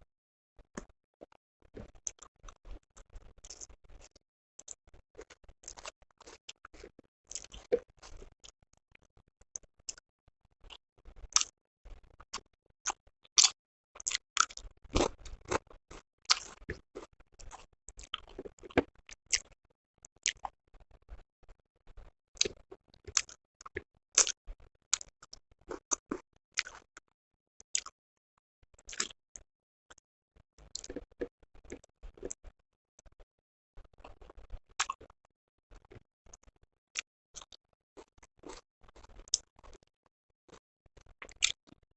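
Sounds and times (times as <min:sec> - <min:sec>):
person chewing food: 0:00.8 - 0:09.1, 0:10.6 - 0:12.5, 0:13.4 - 0:19.5, 0:21.9 - 0:26.8, 0:27.7 - 0:27.9, 0:28.9 - 0:29.1, 0:30.6 - 0:32.4, 0:34.0 - 0:35.1, 0:37.4 - 0:39.9, 0:40.5 - 0:41.8.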